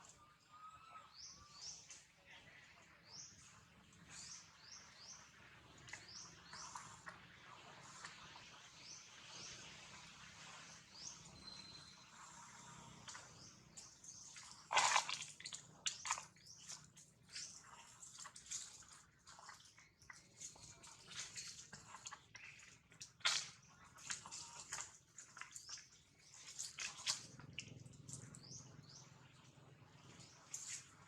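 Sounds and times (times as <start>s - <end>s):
wet clicks and drips: 5.8s - 7.2s, 13.0s - 31.0s.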